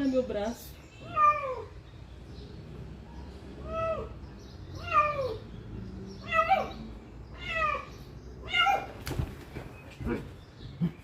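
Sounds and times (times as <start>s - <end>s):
cat meowing: 1.0s - 1.8s, 4.8s - 5.4s, 6.2s - 6.8s, 7.4s - 9.0s.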